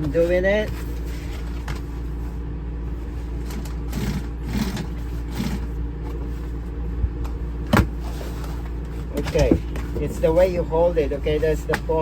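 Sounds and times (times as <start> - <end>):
sewing machine running: 3.9 - 5.7.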